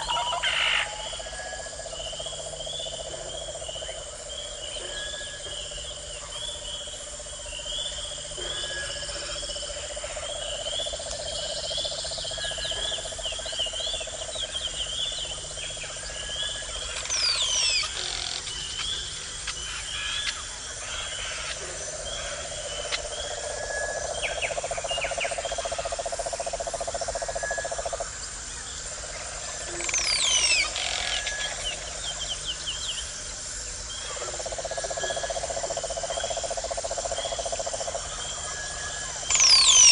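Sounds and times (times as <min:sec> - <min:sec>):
frogs chirping: 0:00.0 - 0:39.9
insects buzzing: 0:00.0 - 0:39.9.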